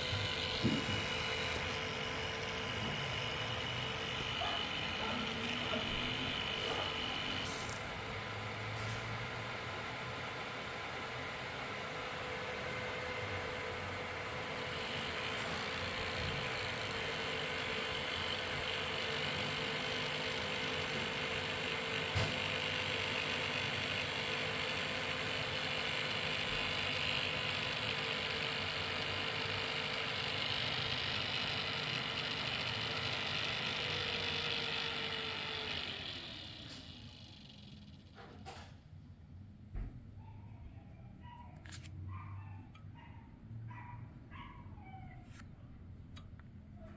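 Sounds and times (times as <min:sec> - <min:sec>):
cooling fan whirring: 0:00.0 - 0:46.9.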